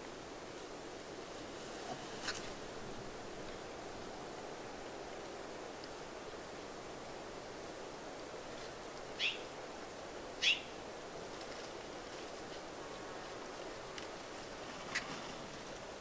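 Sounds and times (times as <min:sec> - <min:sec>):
steady hiss: 0:00.0 - 0:16.0
bird calling: 0:09.2 - 0:09.5, 0:10.4 - 0:10.8.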